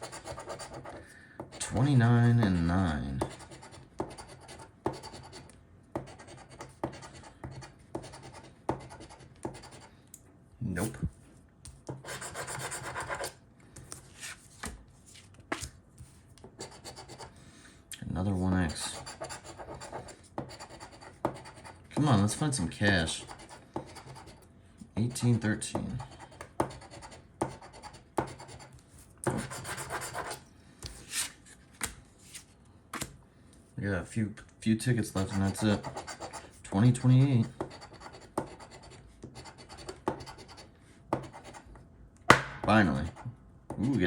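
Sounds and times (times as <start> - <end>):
lottery ticket being scratched: 12.0 - 13.4, 29.3 - 30.4.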